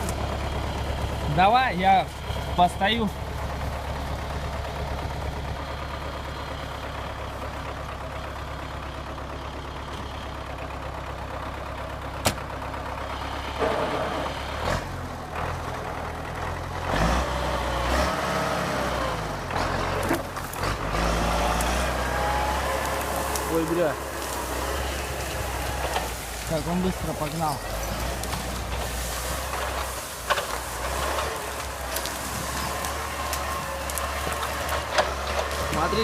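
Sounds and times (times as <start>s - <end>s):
engine knocks: 0.0s - 18.2s, 19.5s - 36.0s
tractor diesel engine running: 0.0s - 36.0s.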